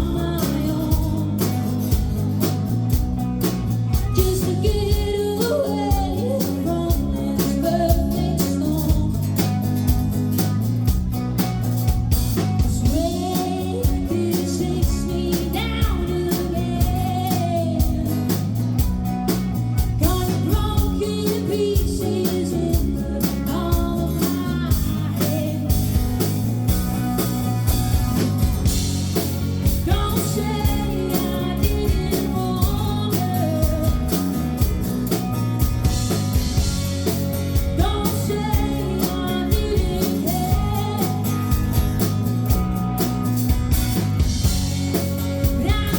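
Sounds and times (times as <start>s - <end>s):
bass: 0.0s - 45.9s
drums: 0.0s - 45.9s
guitar: 0.0s - 45.9s
person singing: 3.9s - 9.4s, 12.8s - 18.4s, 20.0s - 26.4s, 29.6s - 34.5s, 37.0s - 41.8s.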